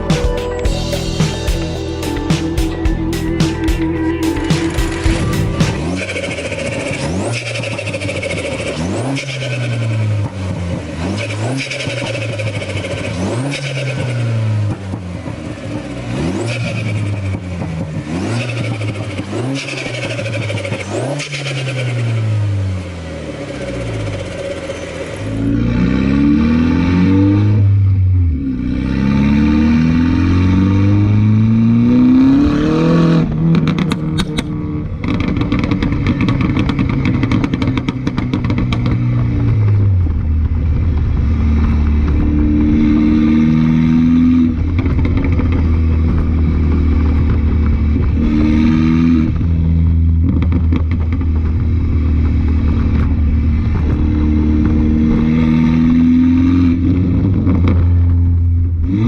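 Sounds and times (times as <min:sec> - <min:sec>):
car engine accelerating: 0:00.0 - 0:59.0
exhaust pops and crackles: 0:04.6 - 0:22.2, 0:32.4 - 0:59.0.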